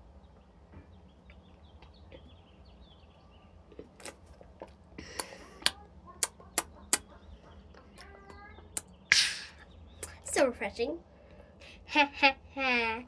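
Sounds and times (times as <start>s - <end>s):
birds chirping: 0.0s - 4.2s
short hiss: 9.1s - 9.6s.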